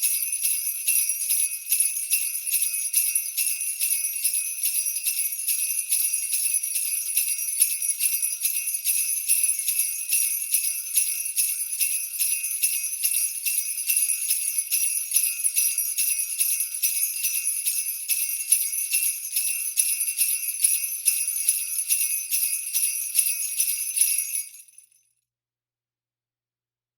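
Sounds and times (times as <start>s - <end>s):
jingle bells shaken: 0.0s - 25.1s.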